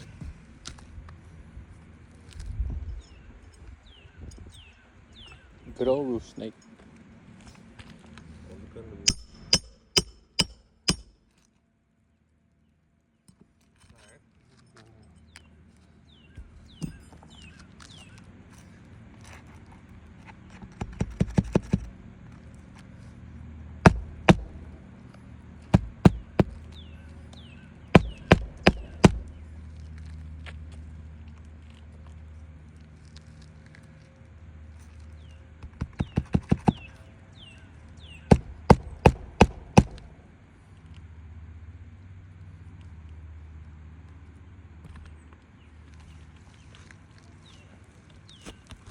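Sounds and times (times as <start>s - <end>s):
heavy hammer strikes: 9.0s - 11.2s, 23.8s - 24.7s, 25.7s - 26.7s, 27.9s - 29.3s, 38.3s - 40.1s
hammer tapping roofing nails: 9.1s - 11.2s, 20.6s - 22.0s, 23.8s - 24.8s, 25.6s - 26.8s, 27.9s - 29.4s, 35.6s - 37.0s, 38.2s - 40.1s.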